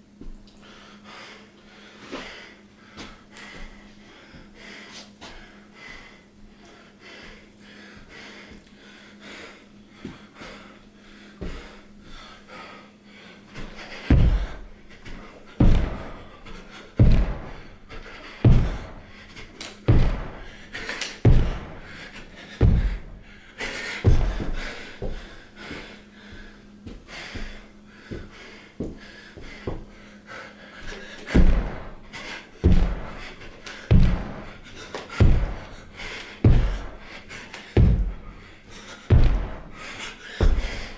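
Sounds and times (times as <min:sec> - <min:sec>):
heavy thuds: 0:13.5 - 0:27.6, 0:30.9 - 0:40.9.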